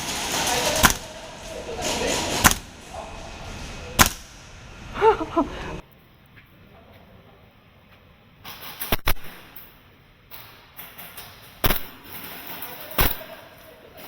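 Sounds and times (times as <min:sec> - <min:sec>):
airsoft gun shots: 0:00.8 - 0:01.1, 0:02.4 - 0:02.7, 0:04.0 - 0:04.3, 0:08.9 - 0:09.5, 0:11.6 - 0:12.0.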